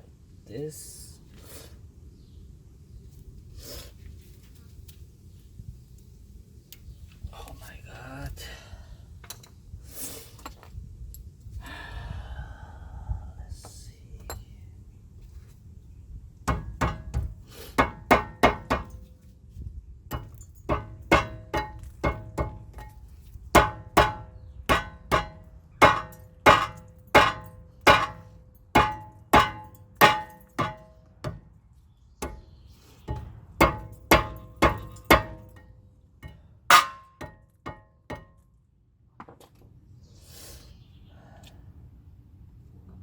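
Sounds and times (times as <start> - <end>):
hammer ringing on brake rotor: 16.5 - 19.1, 20.1 - 31.5, 32.2 - 38.4.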